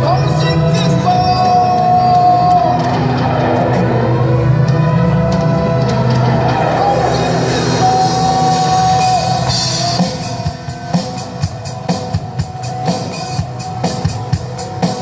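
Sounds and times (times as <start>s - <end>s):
rock band music: 0.0s - 15.0s
drum kit steady beat: 6.4s - 15.0s.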